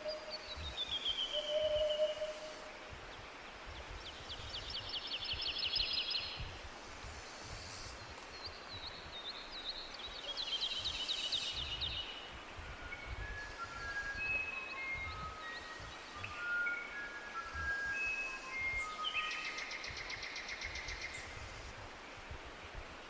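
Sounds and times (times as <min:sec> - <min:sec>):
bird gliding whistle: 0:01.4 - 0:02.6.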